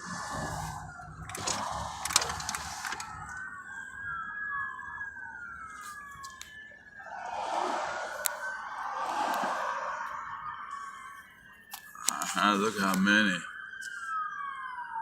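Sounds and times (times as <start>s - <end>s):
low rumble: 0.0s - 4.2s
sirens wailing: 0.0s - 15.0s.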